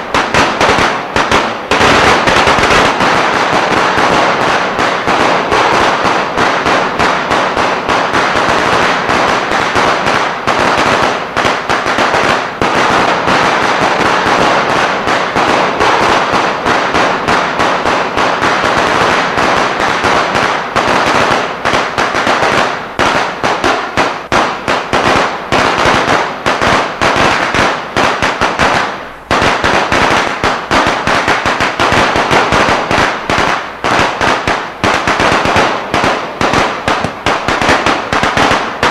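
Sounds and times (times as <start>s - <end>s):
firecracker machine crackling: 0.0s - 38.9s.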